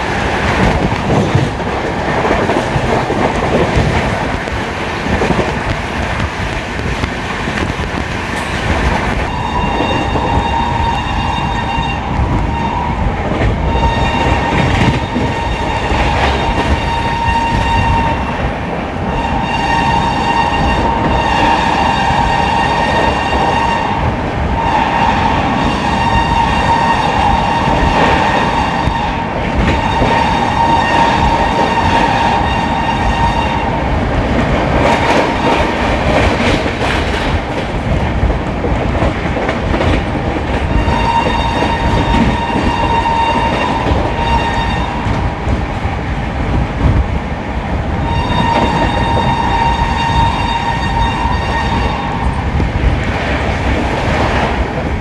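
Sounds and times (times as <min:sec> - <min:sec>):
train running on rails: 0:00.0 - 0:55.0
locomotive horn honking: 0:48.1 - 0:52.2.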